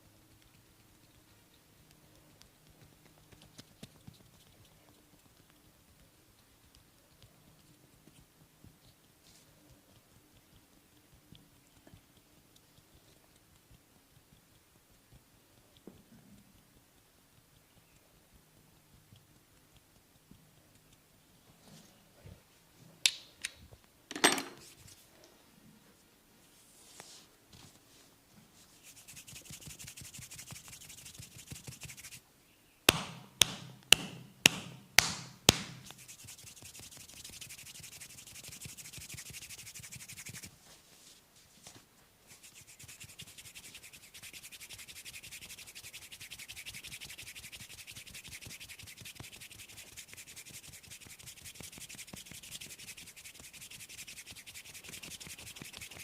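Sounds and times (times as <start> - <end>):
massage rubbing swish: 28.7 - 32.2, 33.0 - 41.1, 42.3 - 56.0.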